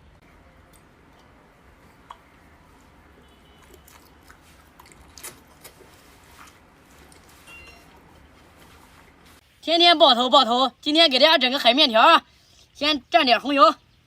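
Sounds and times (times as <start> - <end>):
person chewing food: 0.4 - 9.2
wet mouth smacks and clicks: 3.6 - 5.8.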